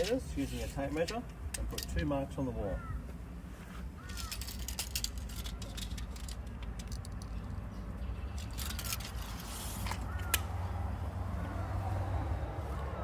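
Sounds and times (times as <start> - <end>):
tape measure clicking and rattling: 4.0 - 7.6, 8.3 - 10.6.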